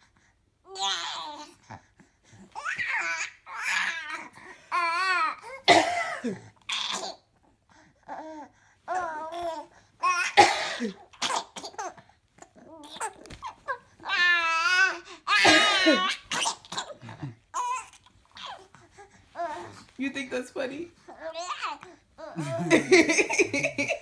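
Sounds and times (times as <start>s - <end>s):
woman coughing: 5.7s - 6.4s, 10.4s - 11.9s, 15.4s - 17.4s.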